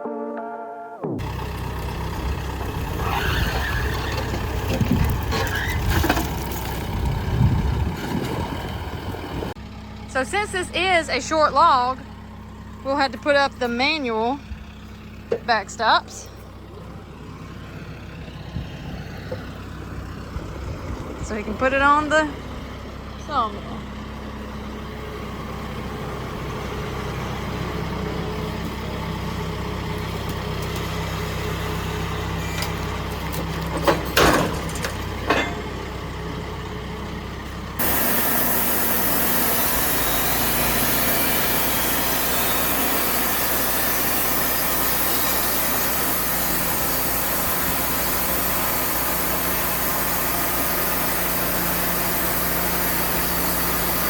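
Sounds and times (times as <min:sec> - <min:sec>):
engine idling: 0:01.2 - 0:54.0
sharp knocks and clanks: 0:32.4 - 0:35.9
hissing machine noise: 0:37.8 - 0:54.0.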